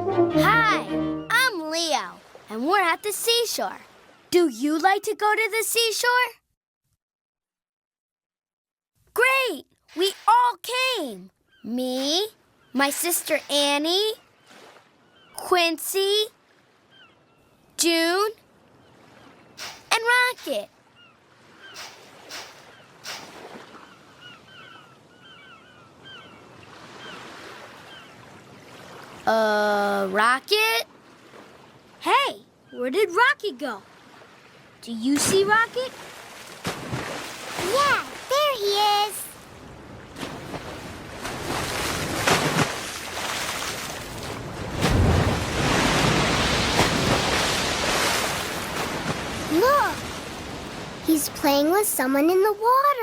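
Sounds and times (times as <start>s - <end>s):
seabird calls: 0.0s - 5.9s, 9.9s - 29.2s, 30.0s - 53.0s
water splashes: 1.6s - 4.3s, 9.8s - 16.9s, 18.8s - 24.6s, 26.6s - 32.0s, 33.8s - 52.4s
surf washing: 12.0s - 14.8s, 19.0s - 20.7s, 21.3s - 24.2s, 33.8s - 52.5s.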